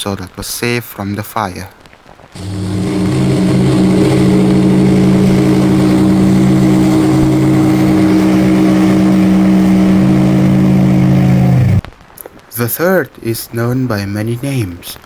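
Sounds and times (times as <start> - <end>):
ship steam whistle blast: 2.4 - 11.8.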